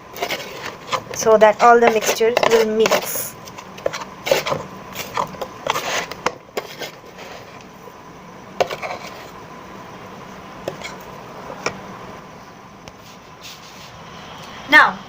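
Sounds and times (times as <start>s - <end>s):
utensil scraping inside a kettle: 0.1s - 7.7s, 8.6s - 9.4s, 10.6s - 11.6s.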